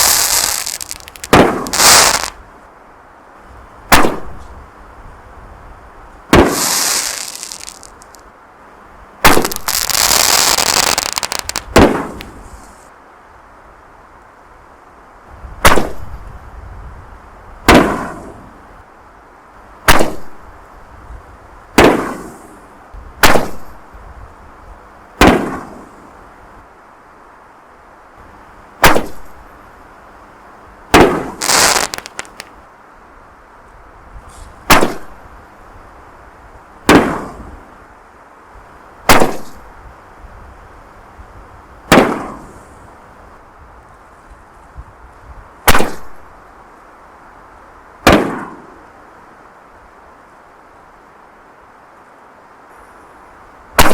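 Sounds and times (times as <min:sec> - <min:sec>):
firework booms echoing: 0:00.0 - 0:02.3, 0:06.3 - 0:07.9, 0:41.9 - 0:42.5
firework crackling: 0:00.0 - 0:02.4, 0:06.3 - 0:08.2, 0:09.2 - 0:12.8, 0:30.9 - 0:32.5.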